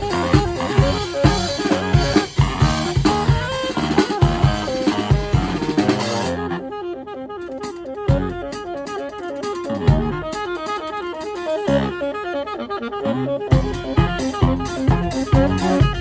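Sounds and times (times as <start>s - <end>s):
drum kit beat: 0.0s - 6.7s, 7.4s - 12.1s, 13.5s - 16.0s
horns playing: 0.0s - 16.0s.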